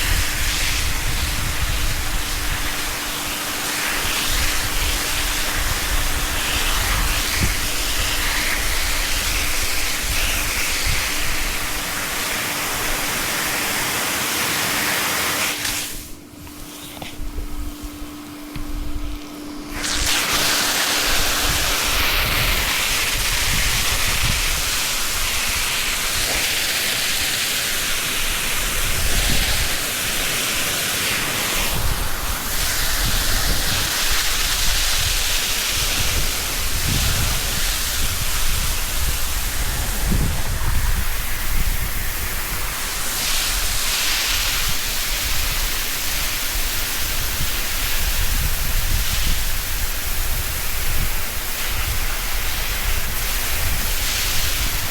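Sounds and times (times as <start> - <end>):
hose spraying water on floor: 0.0 - 54.9
low rumbling: 36.8 - 42.9.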